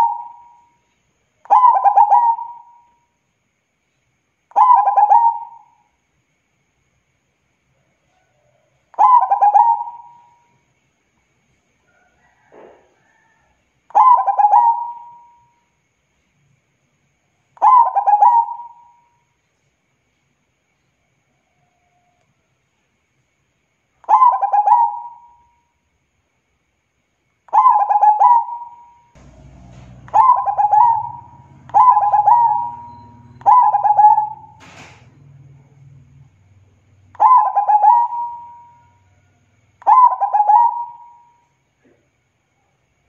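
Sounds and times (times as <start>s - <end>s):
dove cooing: 0.0s - 0.6s, 1.5s - 2.8s, 4.6s - 5.7s, 9.0s - 10.3s, 14.0s - 15.4s, 17.6s - 19.0s, 24.1s - 25.3s, 27.6s - 36.2s, 37.1s - 39.0s, 39.8s - 41.2s.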